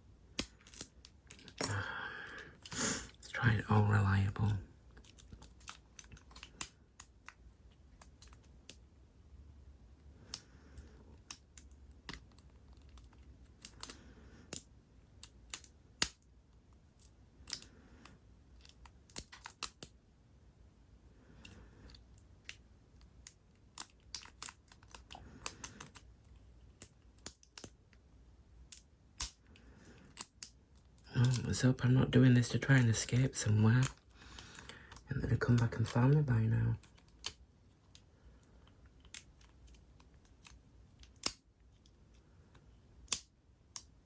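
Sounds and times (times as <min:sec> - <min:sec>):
lock picking clicks and scraping: 0:00.4 - 0:02.8, 0:04.3 - 0:08.8, 0:10.2 - 0:16.3, 0:16.9 - 0:20.0, 0:21.4 - 0:27.8, 0:28.6 - 0:31.6, 0:36.8 - 0:38.1, 0:38.7 - 0:44.0.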